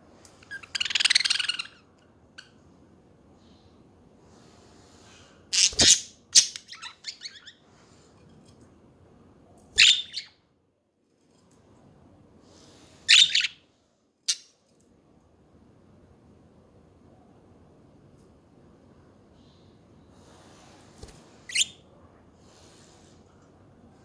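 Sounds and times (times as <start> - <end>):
budgerigars chirping: 0.5 - 1.8, 5.6 - 7.6, 9.8 - 10.3, 13.1 - 13.6.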